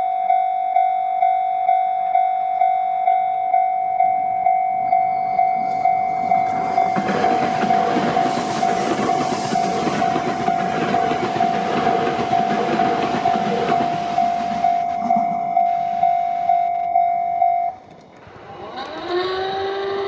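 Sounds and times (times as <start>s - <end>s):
crossing warning bell ringing: 0.0s - 18.0s
electric train rushing past: 3.6s - 20.0s.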